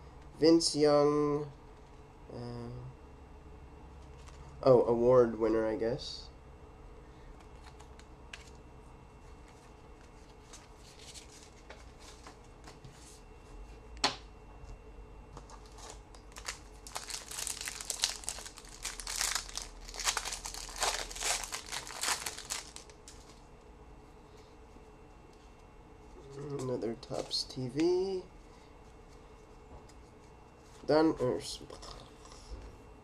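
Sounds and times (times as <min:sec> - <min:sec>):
wrapper crinkling and tearing: 0:15.6 - 0:23.4.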